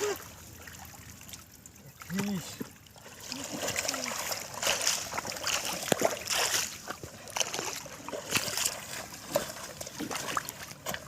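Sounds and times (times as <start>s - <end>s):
shallow water splashing: 0.0s - 11.0s.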